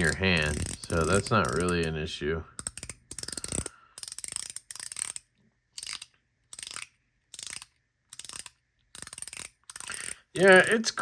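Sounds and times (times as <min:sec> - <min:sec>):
fidget toy ratcheting clicks: 0:00.0 - 0:02.0, 0:02.6 - 0:11.0.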